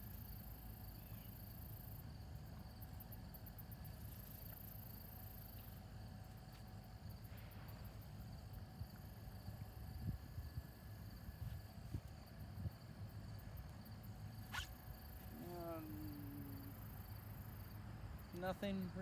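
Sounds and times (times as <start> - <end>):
insects trilling: 0.0 - 19.0
low wind rumble: 7.3 - 15.4.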